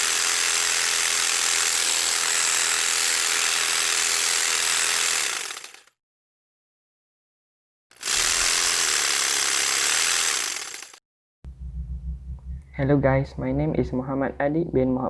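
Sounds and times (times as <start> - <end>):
electric jigsaw sawing: 0.0 - 6.0, 7.9 - 11.0.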